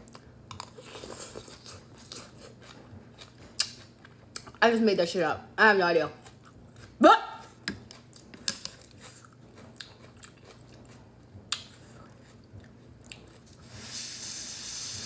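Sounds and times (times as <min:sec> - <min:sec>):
chewing noodles: 0:07.9 - 0:13.7
hissing sound: 0:13.7 - 0:15.0.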